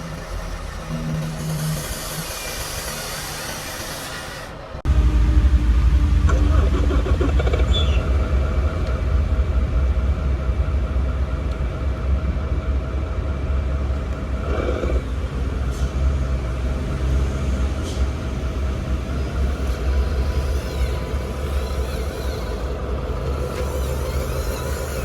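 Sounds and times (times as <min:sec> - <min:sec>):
constant motor whine: 0:00.0 - 0:25.0
low motor rumble: 0:04.8 - 0:20.3.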